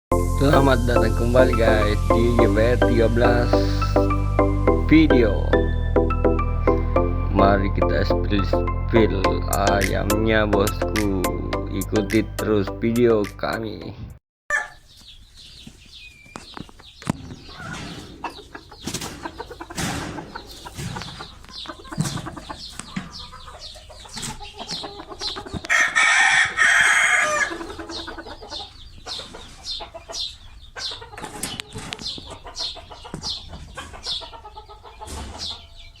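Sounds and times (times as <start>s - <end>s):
chickens clucking: 14.5s - 36.0s
rooster crowing: 25.7s - 27.6s.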